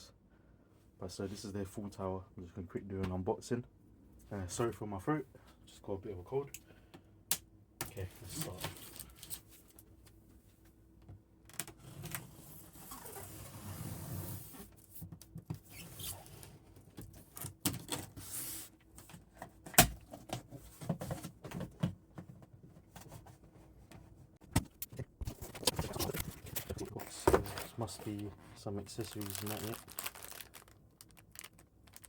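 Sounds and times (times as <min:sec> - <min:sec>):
cardboard scraping and rustling: 0:24.6 - 0:29.6.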